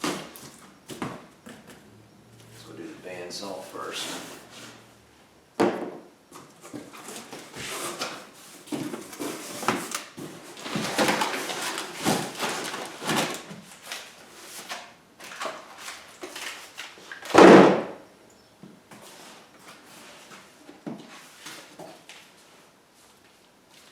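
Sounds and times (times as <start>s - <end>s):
cardboard packaging rustling: 6.4s - 17.3s.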